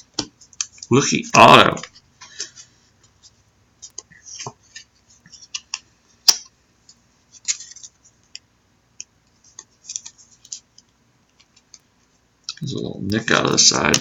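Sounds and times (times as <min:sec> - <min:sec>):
cards clicking and scraping: 0:01.8 - 0:08.5, 0:09.3 - 0:11.9.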